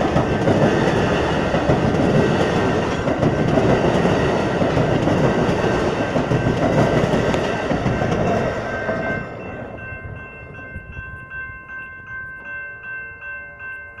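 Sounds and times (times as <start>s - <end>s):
train wheels clattering on rails: 0.0s - 10.3s.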